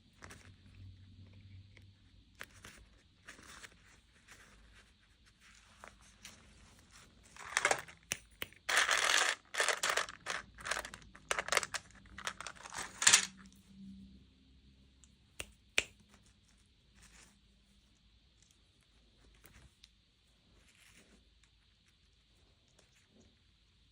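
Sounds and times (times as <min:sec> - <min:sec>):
packaging crinkling and tearing: 0:07.4 - 0:08.0, 0:08.7 - 0:13.3.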